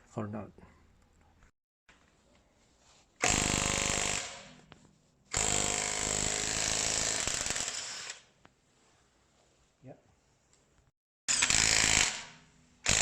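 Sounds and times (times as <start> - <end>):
impact wrench hammering nut: 11.3 - 13.0.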